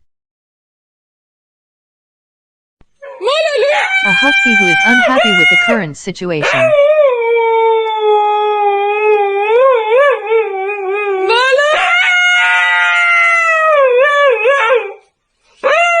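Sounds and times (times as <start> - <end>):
husky howling: 3.0 - 5.7, 6.4 - 16.0.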